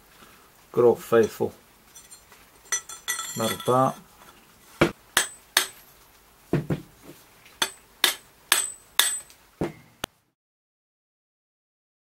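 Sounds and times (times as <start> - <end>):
sharp metallic knocks: 4.8 - 6.0, 7.6 - 9.8.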